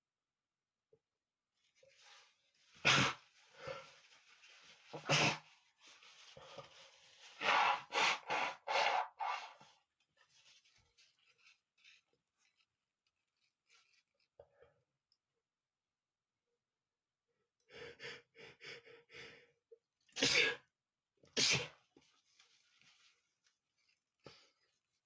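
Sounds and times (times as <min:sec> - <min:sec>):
man sneezing: 0:20.2 - 0:20.6.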